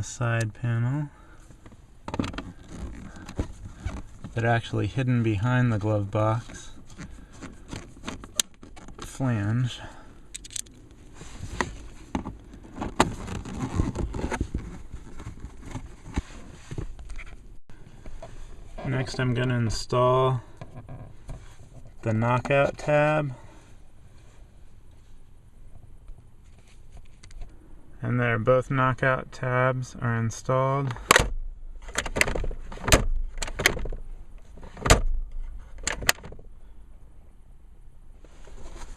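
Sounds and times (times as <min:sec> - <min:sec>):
rubbing and handling noise: 0:00.6 - 0:19.8, 0:20.4 - 0:25.3, 0:26.4 - 0:27.5, 0:38.2 - 0:38.9.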